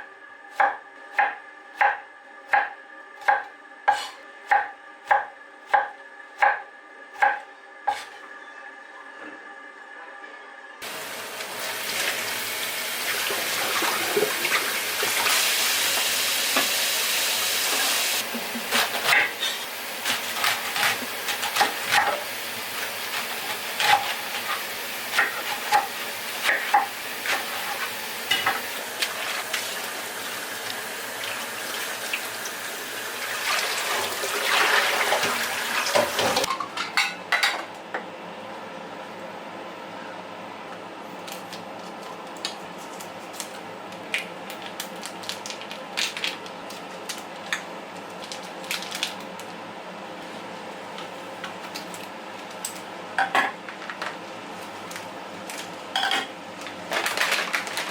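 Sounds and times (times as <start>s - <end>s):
cooking hiss: 10.8s - 36.4s.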